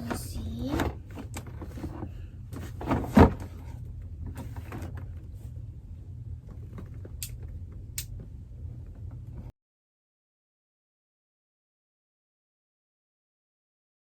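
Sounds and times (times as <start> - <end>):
low steady hum: 0.0 - 9.5.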